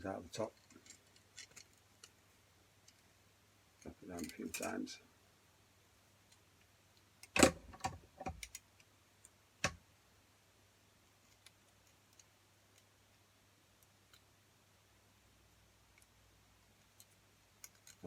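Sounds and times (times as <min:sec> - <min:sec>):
wire clicking and rattling: 0:00.4 - 0:03.1, 0:03.8 - 0:04.8, 0:06.3 - 0:09.8, 0:15.9 - 0:18.0.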